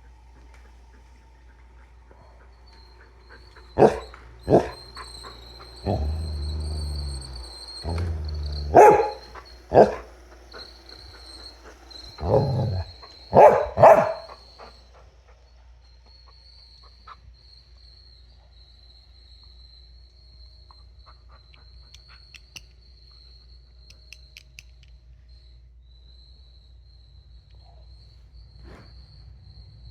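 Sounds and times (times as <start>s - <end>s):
dog barking: 3.8s - 5.0s, 5.8s - 10.1s, 12.2s - 14.4s
low rumbling: 5.8s - 10.0s.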